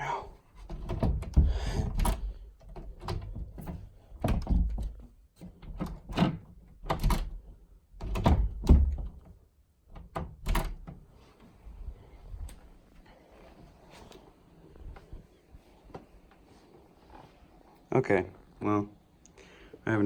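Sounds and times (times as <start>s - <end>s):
door knocks and latch clicks: 0.6s - 11.0s.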